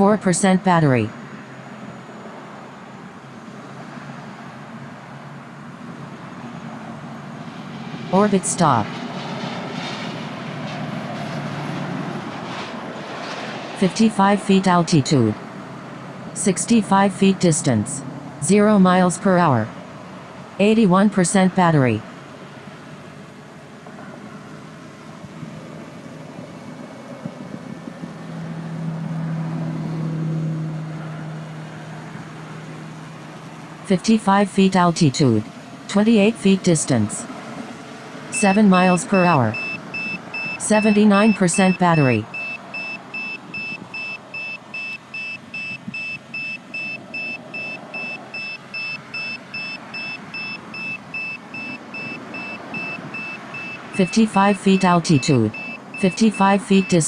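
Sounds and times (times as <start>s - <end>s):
low engine hum: 0.0s - 57.0s
short high-pitched beeps: 38.4s - 57.0s.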